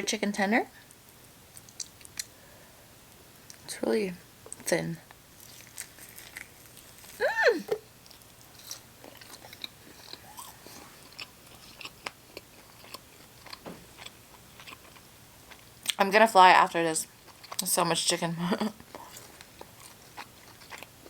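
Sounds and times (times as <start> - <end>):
chewing with wet mouth clicks: 1.5 - 2.3, 5.4 - 7.2, 8.0 - 16.0, 17.2 - 17.7, 18.8 - 21.0
person humming: 7.2 - 7.8.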